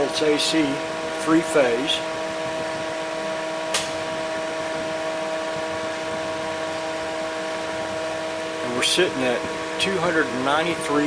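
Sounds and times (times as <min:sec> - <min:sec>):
multi-tone electrical hum: 0:00.0 - 0:11.0
power supply cooling fan: 0:00.0 - 0:11.0
sharp click: 0:03.7 - 0:04.0.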